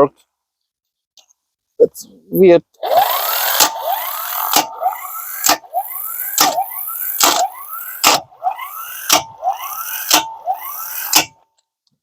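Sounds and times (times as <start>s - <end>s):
impact wrench motor whining: 2.8s - 11.5s
impact wrench click: 3.5s - 8.3s, 8.9s - 11.4s.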